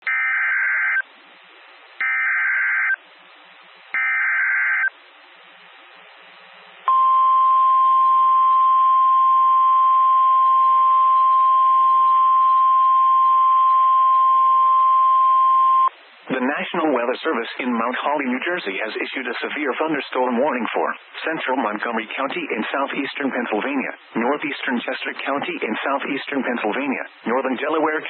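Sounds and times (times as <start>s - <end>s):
faint radio hiss: 0.1s - 28.0s
steady attention tone: 6.8s - 15.9s.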